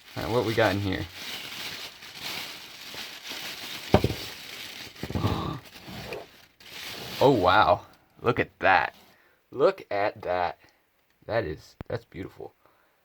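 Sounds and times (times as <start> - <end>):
paper crinkling and rustling: 0.0 - 7.5.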